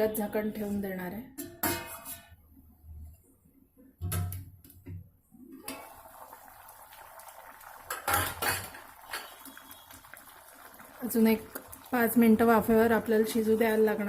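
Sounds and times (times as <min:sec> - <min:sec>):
steaming vegetables hissing: 0:05.9 - 0:13.9
steel plate clanking on pan: 0:07.9 - 0:09.3.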